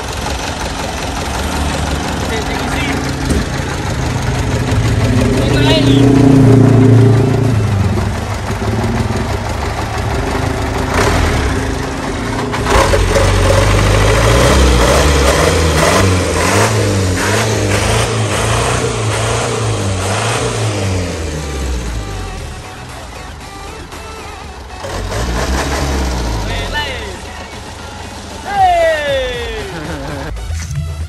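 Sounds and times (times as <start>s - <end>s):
truck diesel engine revving: 0.0s - 31.0s.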